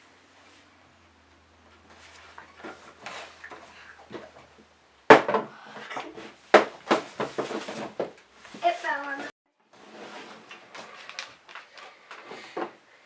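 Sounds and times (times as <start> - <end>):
soft rustling: 7.0 - 12.6.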